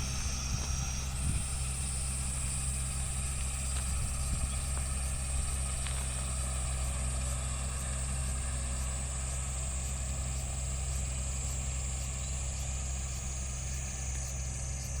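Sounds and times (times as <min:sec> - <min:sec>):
high whine: 0:00.0 - 0:06.8
tractor engine running: 0:00.0 - 0:15.0.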